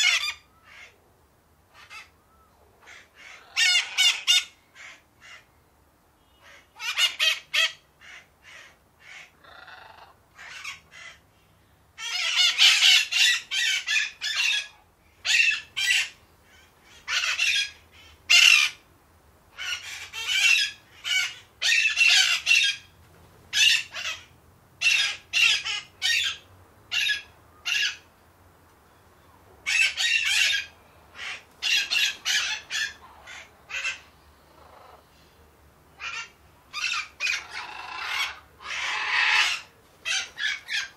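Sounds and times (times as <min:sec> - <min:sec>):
parakeets squawking: 0:00.0 - 0:00.9, 0:02.8 - 0:05.4, 0:06.4 - 0:11.2, 0:12.0 - 0:18.8, 0:19.5 - 0:22.9, 0:23.5 - 0:28.1, 0:29.6 - 0:35.0, 0:36.0 - 0:40.9.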